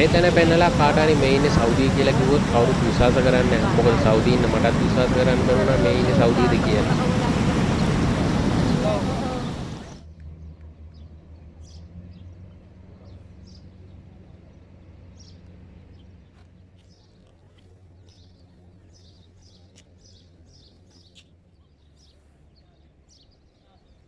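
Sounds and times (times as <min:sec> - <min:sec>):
low steady hum: 0:00.0 - 0:10.1
small birds chirping: 0:10.9 - 0:24.0.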